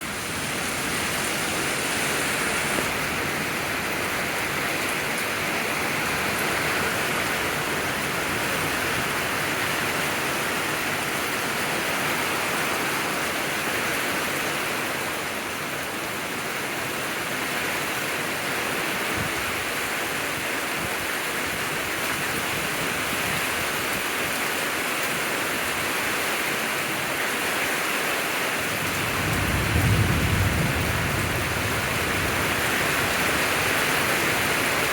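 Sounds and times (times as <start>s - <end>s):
steady rain hiss: 0.0s - 34.9s
thunder rumble: 28.8s - 34.9s.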